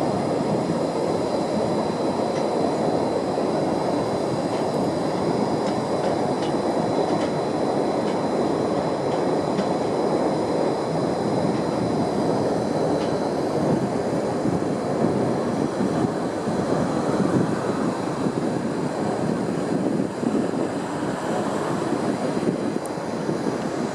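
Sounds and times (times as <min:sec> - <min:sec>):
freight train wagons rumbling: 0:00.0 - 0:18.2.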